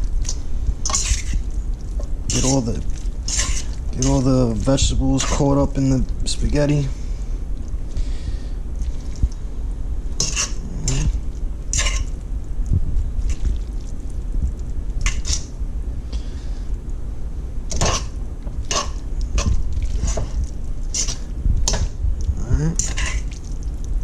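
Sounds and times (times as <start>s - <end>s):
steady low hum: 0.0s - 24.0s
utensil scraping a wok: 0.3s - 1.5s, 2.3s - 5.7s, 10.2s - 12.2s, 15.0s - 15.5s, 17.7s - 21.9s, 22.7s - 23.4s.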